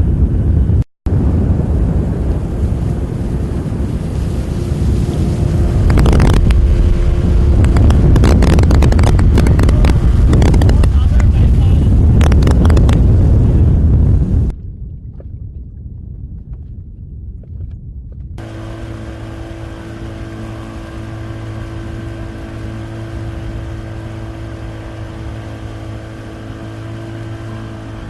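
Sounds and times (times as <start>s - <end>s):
constant hum: 0.0s - 28.0s
engine running low rumble: 0.0s - 28.0s.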